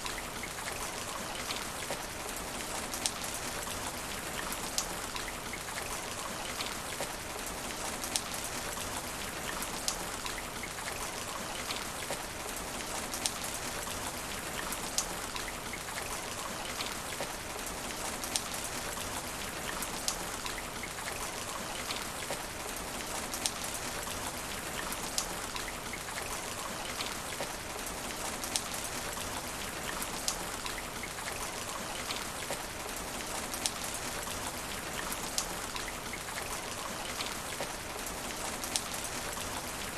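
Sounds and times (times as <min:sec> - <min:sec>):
rain hitting asphalt: 0:00.0 - 0:39.9.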